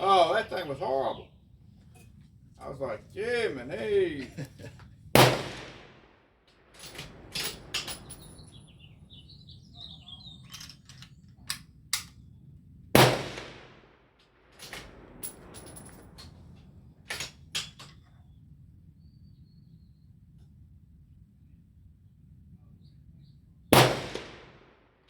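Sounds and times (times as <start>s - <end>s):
rifle shot: 5.1s - 8.2s, 12.9s - 14.0s, 23.8s - 24.8s.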